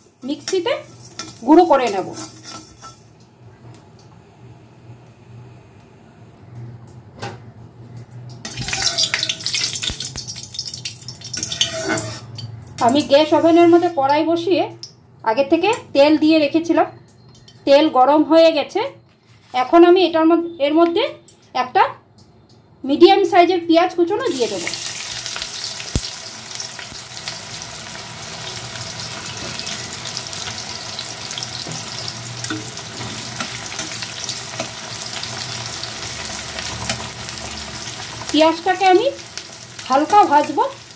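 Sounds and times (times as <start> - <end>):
hot oil sizzling: 0.0 - 3.2, 8.4 - 14.9, 24.2 - 40.9.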